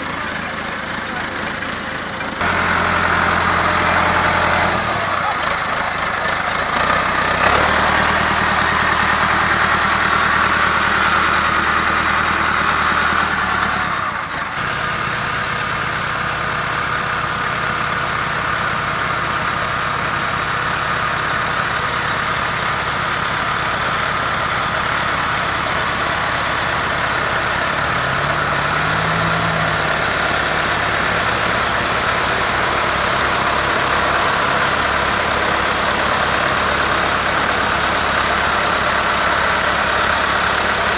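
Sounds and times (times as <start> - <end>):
tractor diesel engine running: 0.0 - 40.9.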